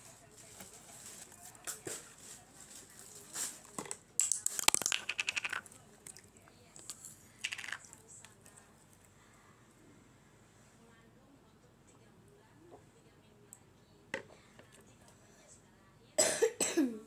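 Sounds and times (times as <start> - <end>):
fried potato sticks crunching: 3.1 - 8.1.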